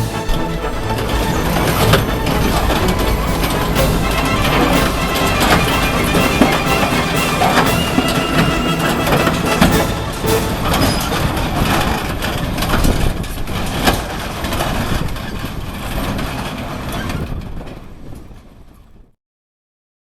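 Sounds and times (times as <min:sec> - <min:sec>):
heavy vehicle running: 0:00.0 - 0:13.3.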